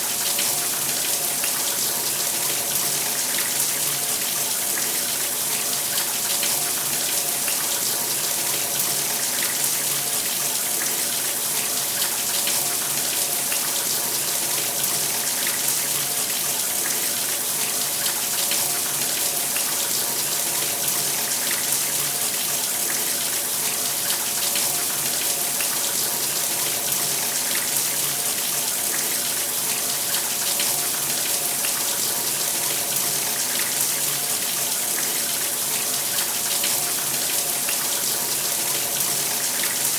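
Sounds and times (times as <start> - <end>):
shower running: 0.0 - 39.9.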